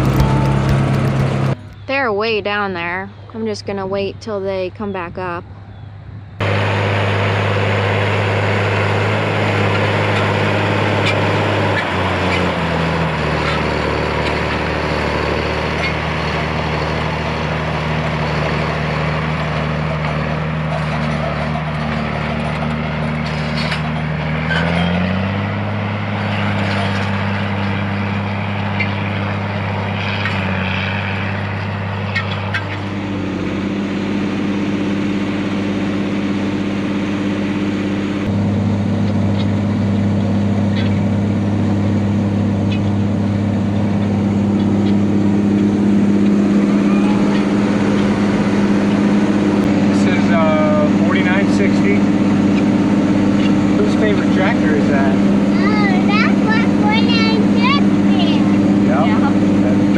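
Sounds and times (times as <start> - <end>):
tractor diesel engine running: 0.0 - 59.9.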